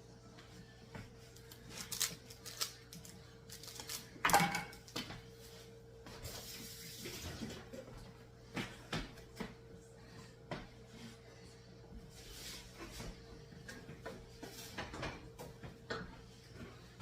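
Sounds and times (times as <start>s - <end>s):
kitchen clatter: 4.2s - 4.9s.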